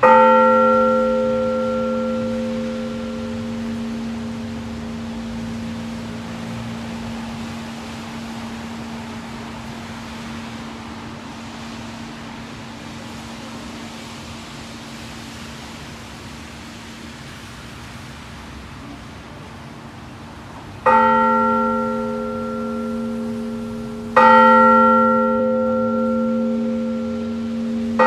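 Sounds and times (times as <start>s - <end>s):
church bell ringing: 0.0s - 9.0s, 20.8s - 28.0s
steady background noise: 0.0s - 28.0s.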